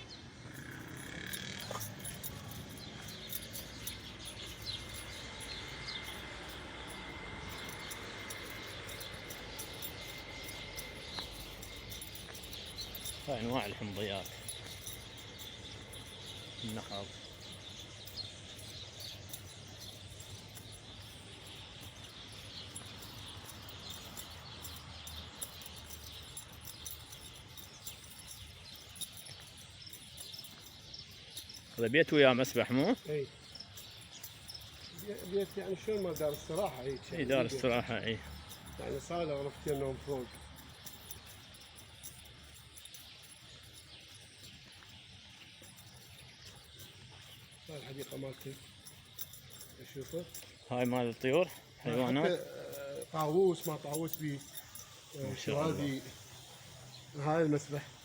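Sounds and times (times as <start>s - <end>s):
small animals chirping and clicking: 0.0s - 58.0s
faint steady high tone: 47.7s - 57.9s.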